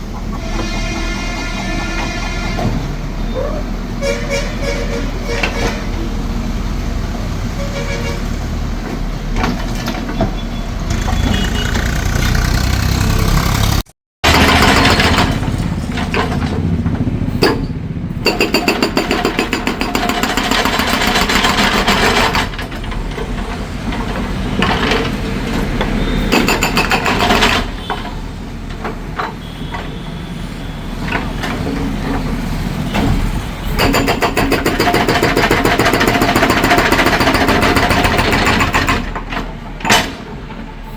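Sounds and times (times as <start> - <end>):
hydraulic breaker hammering: 14.2 - 16.6, 17.3 - 29.5, 32.8 - 40.4.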